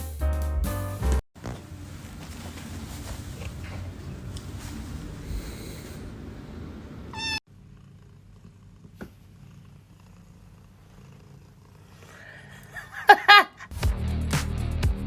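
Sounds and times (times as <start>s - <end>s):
cat purring: 7.2s - 12.9s.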